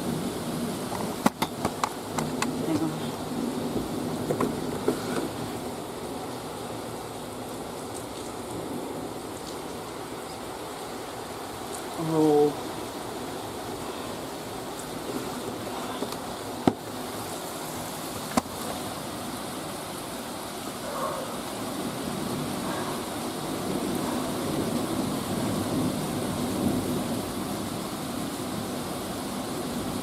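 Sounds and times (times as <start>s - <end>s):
steady rain: 0.0s - 30.0s.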